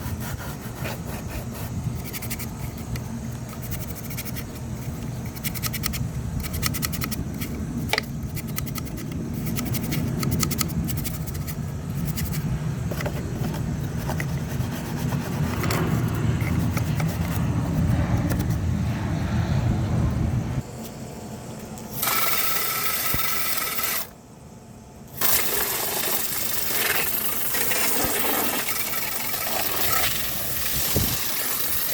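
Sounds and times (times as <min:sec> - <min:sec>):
hose water spraying: 0:25.2 - 0:31.9.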